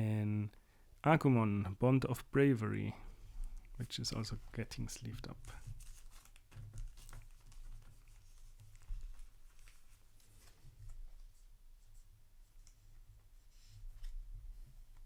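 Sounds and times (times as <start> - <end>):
cards rustling and clicking: 5.0 - 10.6.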